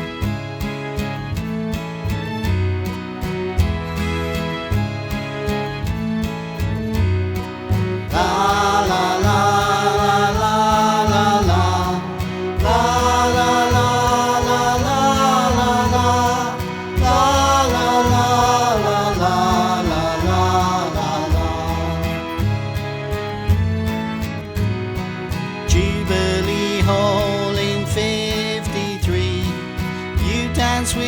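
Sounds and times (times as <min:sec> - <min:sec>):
slow chant-like song: 0:07.9 - 0:23.2.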